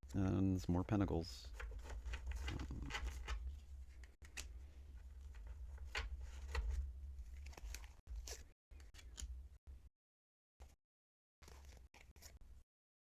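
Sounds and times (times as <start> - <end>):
cards snapping and sliding: 7.4 - 9.3.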